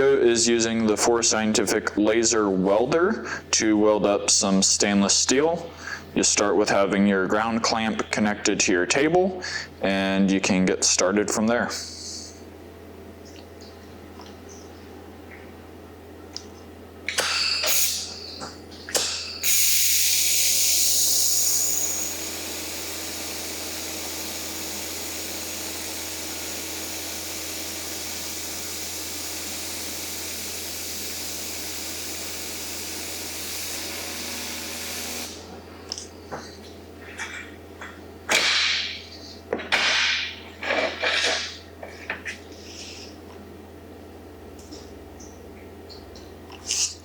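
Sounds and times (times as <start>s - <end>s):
shielding gas hissing: 17.2s - 35.5s.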